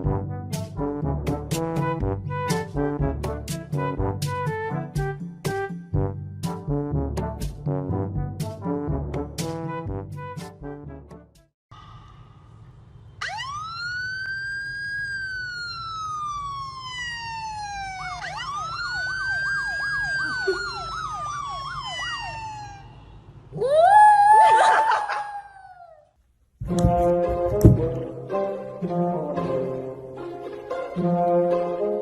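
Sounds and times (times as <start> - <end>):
siren wailing: 13.2 - 25.9
siren warbling yelp: 13.2 - 26.0.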